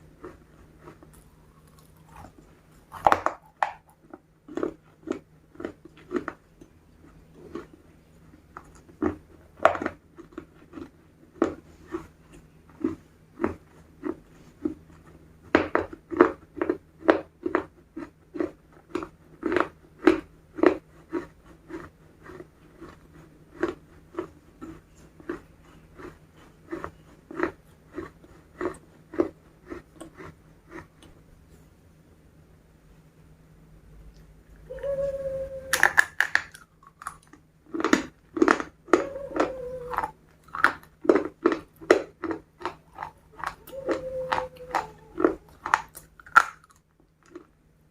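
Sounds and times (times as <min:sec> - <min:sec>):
chewing crispy fried chicken: 0:00.0 - 0:31.2, 0:35.7 - 0:47.6.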